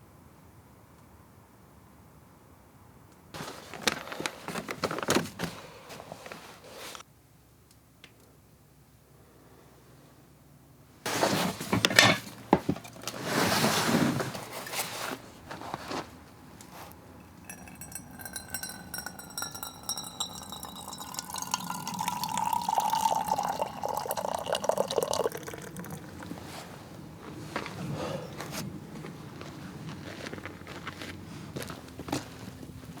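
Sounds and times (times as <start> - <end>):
clinking and handling noise: 11.1 - 32.6
liquid pouring into container: 17.3 - 26.8.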